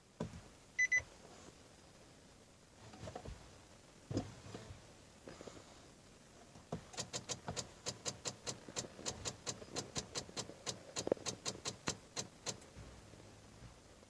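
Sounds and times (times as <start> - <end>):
rapid clicking of car electrics: 6.7 - 12.7.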